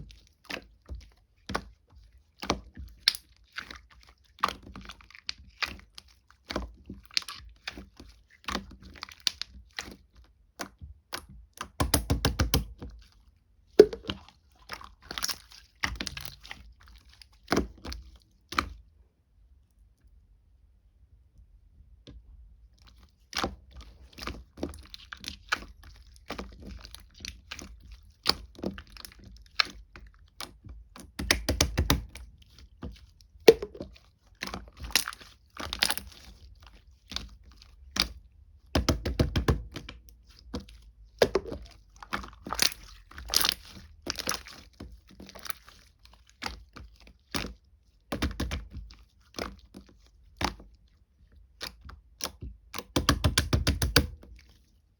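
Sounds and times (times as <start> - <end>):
slime squishing: 0.0 - 20.2, 22.2 - 54.9
slime clicking and popping: 11.1 - 12.8, 31.1 - 32.2, 42.2 - 44.5, 51.7 - 54.2.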